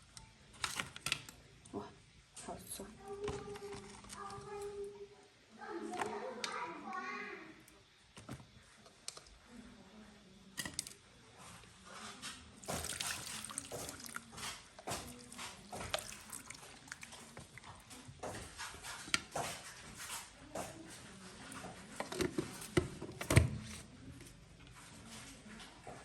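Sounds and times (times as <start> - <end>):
liquid splashing or pouring: 12.6 - 17.7.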